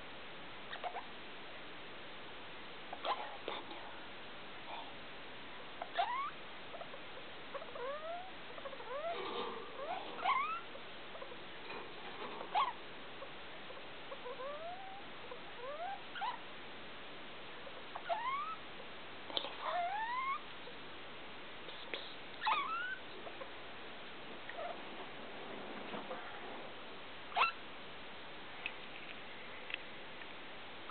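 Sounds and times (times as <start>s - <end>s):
degu squeaks: 0.7s - 1.1s, 2.9s - 3.4s, 5.8s - 11.4s, 12.4s - 12.8s, 13.7s - 16.4s, 17.8s - 18.6s, 19.4s - 20.4s, 22.4s - 23.5s, 27.3s - 27.6s.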